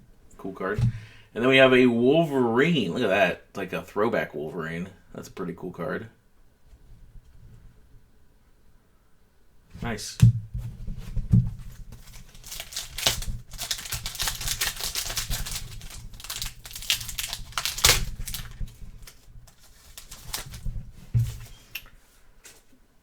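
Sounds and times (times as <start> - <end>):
cards being handled: 11.6 - 22.7
foil pack tearing and crinkling: 12.0 - 21.8.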